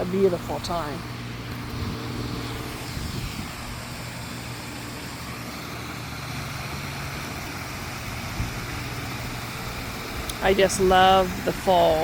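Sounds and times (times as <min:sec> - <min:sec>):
low engine hum: 0:00.0 - 0:12.0
small waterfall rushing: 0:02.4 - 0:12.0.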